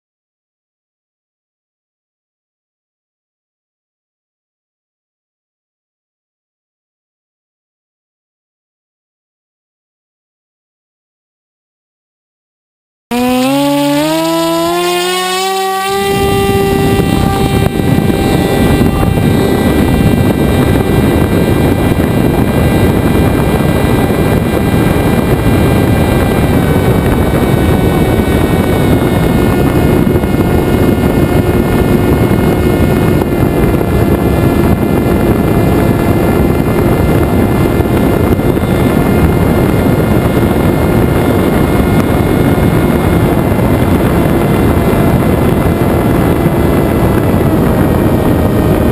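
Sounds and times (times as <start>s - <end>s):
electric motor and propeller drone: 13.1s - 48.9s
wind rush: 13.1s - 48.9s.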